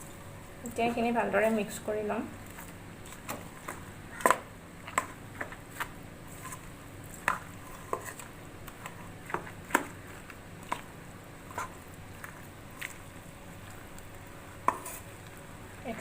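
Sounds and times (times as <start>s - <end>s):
spoon scraping a bowl: 6.3s - 9.6s, 14.6s - 15.1s.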